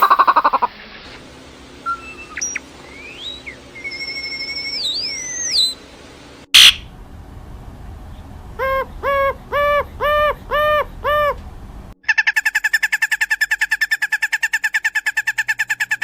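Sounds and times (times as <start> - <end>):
bird hooting: 0.0 - 0.7, 1.9 - 5.8, 6.6 - 6.9, 8.6 - 11.4
bird whistling gliding notes: 1.8 - 5.9, 6.5 - 6.9.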